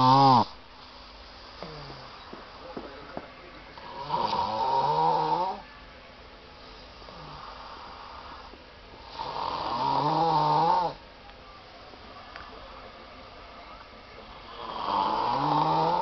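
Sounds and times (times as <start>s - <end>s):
person snoring loudly: 0.0s - 0.5s, 3.8s - 5.6s, 9.0s - 11.0s, 14.4s - 16.0s.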